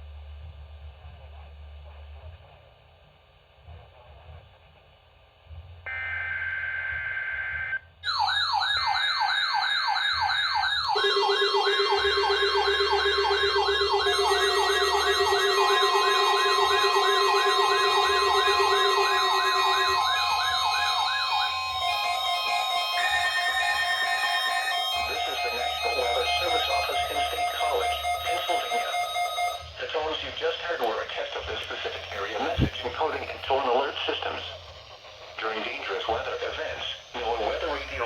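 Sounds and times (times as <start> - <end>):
digital header tones: 5.9 - 8.3, 10.8 - 29.8, 32.0 - 33.4
electronic alert siren sweeping: 5.9 - 29.8, 32.0 - 33.4
steady alert tones: 10.0 - 29.8.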